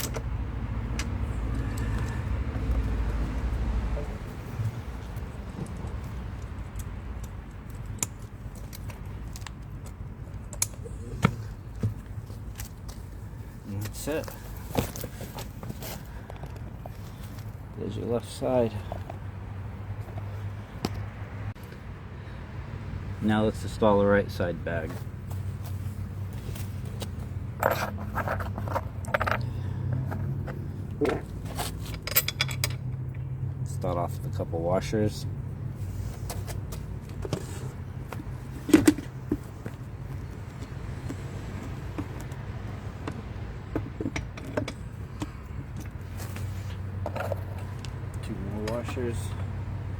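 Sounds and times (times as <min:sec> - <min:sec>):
saddlebag scraping and rustling: 0:11.3 - 0:17.5, 0:24.8 - 0:29.4, 0:35.8 - 0:42.4, 0:45.9 - 0:47.8.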